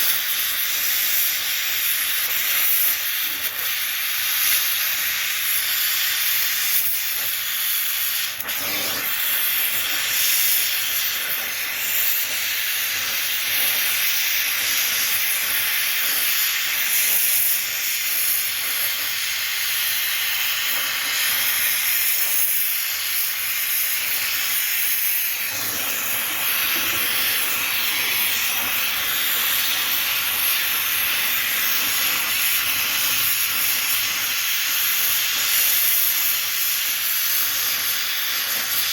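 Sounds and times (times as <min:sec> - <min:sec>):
gas torch flame hissing: 0:00.0 - 0:38.9.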